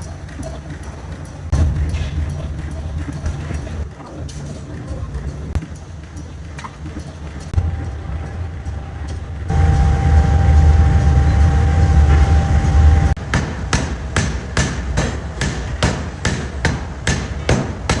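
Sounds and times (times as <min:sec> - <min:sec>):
hammer striking steel: 0:07.6 - 0:18.0
pneumatic hammer droning: 0:07.6 - 0:18.0.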